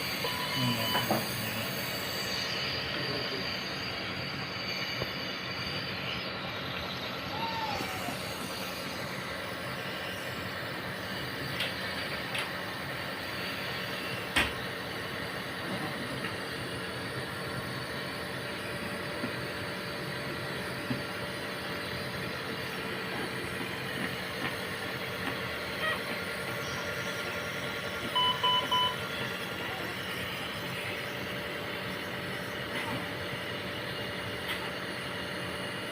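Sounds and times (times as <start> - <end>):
equipment hum and hiss: 0.0 - 35.9
short electronic beeps: 0.2 - 1.1, 28.1 - 29.1.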